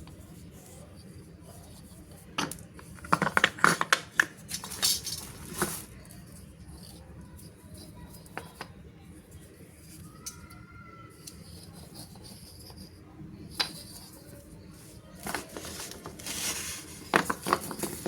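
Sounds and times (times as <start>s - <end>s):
clicks and taps of handled objects: 1.5s - 5.8s, 6.8s - 8.8s, 9.4s - 14.4s, 17.0s - 18.0s.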